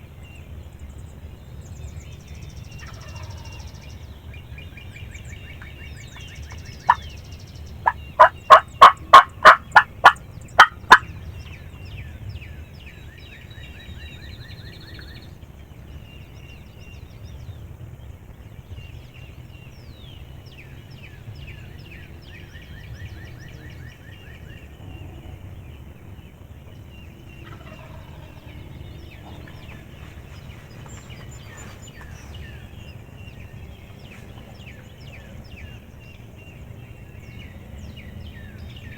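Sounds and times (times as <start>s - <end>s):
songbirds singing: 0.0s - 38.9s
turkey call yelps: 7.8s - 11.0s.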